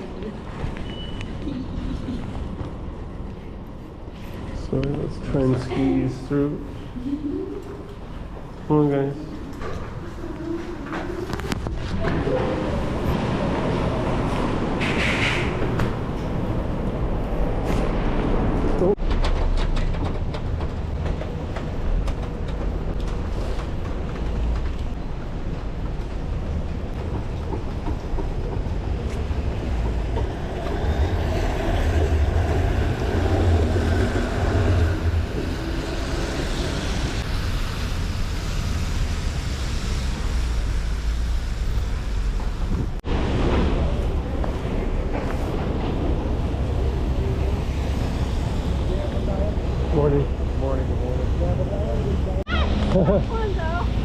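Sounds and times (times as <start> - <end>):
city traffic rumble: 0.0 - 54.0
vehicle passing: 28.3 - 54.0.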